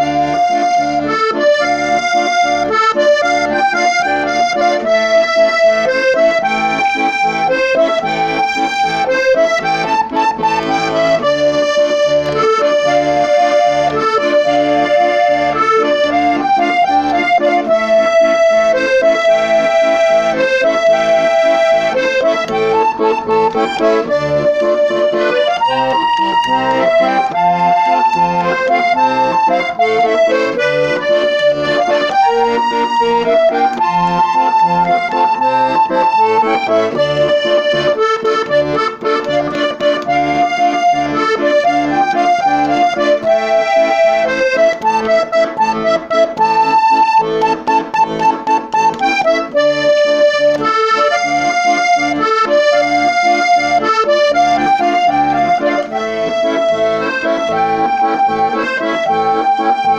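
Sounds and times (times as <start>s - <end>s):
accordion playing a waltz: 0.0s - 59.9s.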